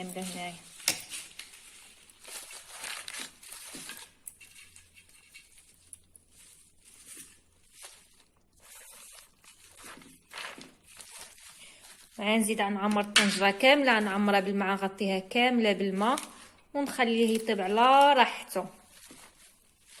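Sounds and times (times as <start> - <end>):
herbs rustling and crackling: 0.0 - 20.0.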